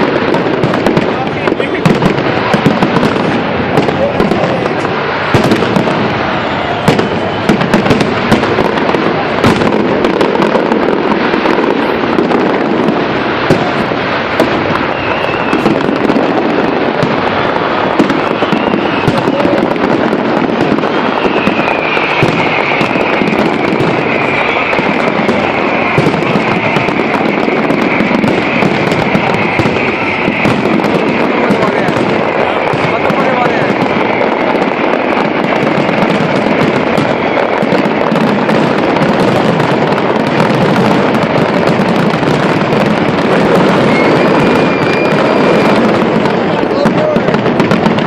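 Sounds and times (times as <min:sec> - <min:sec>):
fireworks crackling and banging: 0:00.0 - 0:48.0
high whistling tone: 0:14.8 - 0:15.9, 0:18.2 - 0:19.3, 0:20.8 - 0:28.6, 0:43.7 - 0:45.8.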